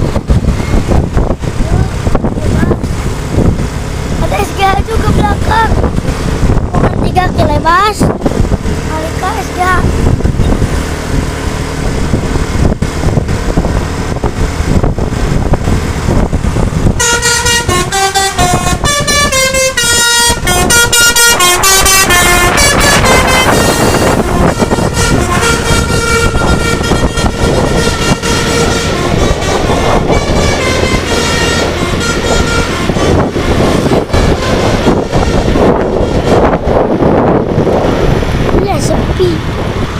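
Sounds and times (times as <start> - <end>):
bus engine and road noise: 0.0 - 39.9
musical air horn tune: 17.0 - 36.8.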